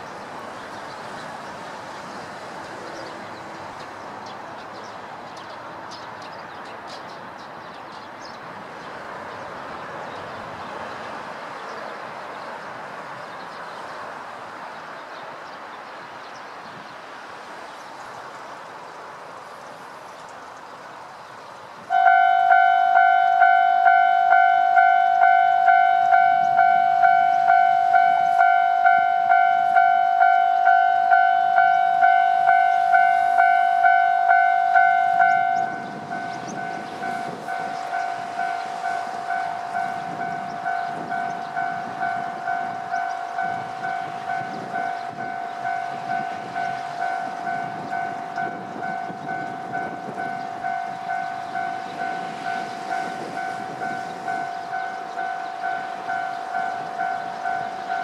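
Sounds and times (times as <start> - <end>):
train rumbling: 16.7 - 58.0
electronic crossing bell clanging: 21.9 - 58.0.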